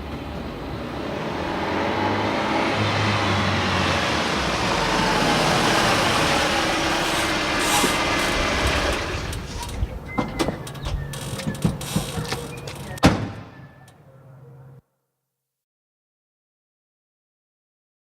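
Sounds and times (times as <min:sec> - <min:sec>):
car engine accelerating: 0:00.0 - 0:12.0
road noise: 0:00.0 - 0:14.8.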